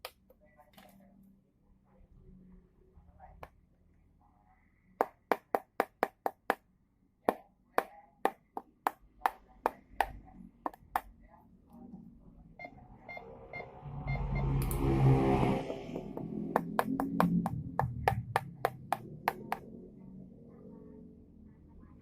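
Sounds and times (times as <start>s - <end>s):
sharp taps: 15.7s - 19.7s.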